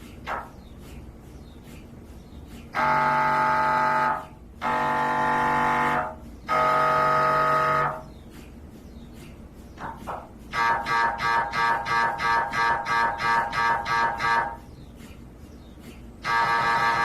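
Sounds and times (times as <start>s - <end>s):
mri scanner buzzing tones: 2.8s - 8.0s.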